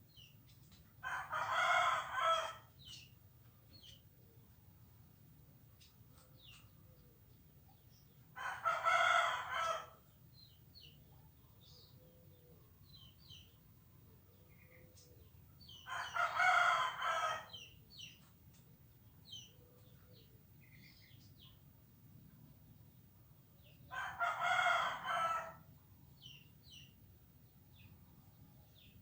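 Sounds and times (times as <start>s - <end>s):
rooster crowing: 1.0s - 2.6s, 8.4s - 9.9s, 15.9s - 17.5s, 23.9s - 25.6s.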